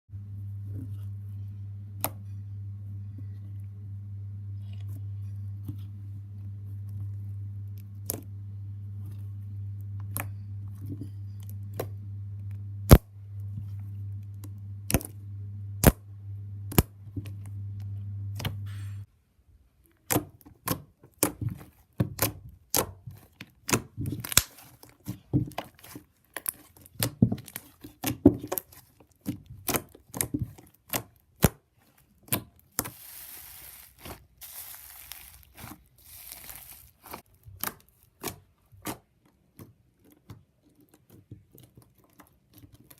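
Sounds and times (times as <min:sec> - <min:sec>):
steady low hum: 0:00.1 - 0:19.1.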